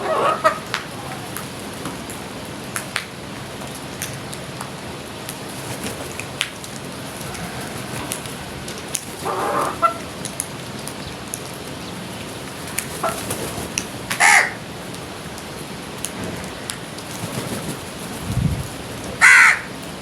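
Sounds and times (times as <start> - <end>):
crows cawing: 14.1 - 14.6, 19.2 - 19.8.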